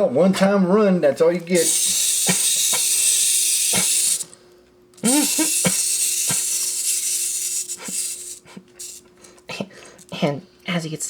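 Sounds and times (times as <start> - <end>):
steady high hiss: 1.2 - 4.3.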